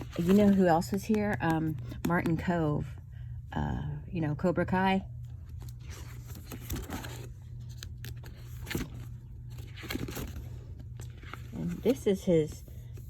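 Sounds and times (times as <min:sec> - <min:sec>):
paper pages rustling: 0:00.0 - 0:02.3, 0:05.4 - 0:13.0
steady low hum: 0:00.0 - 0:13.0.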